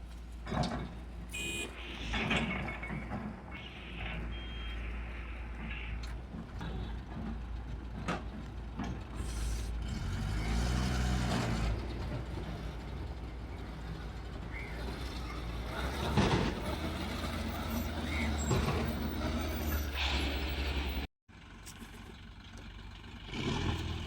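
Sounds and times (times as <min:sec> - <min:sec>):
heavy diesel machinery running: 0:00.4 - 0:24.0.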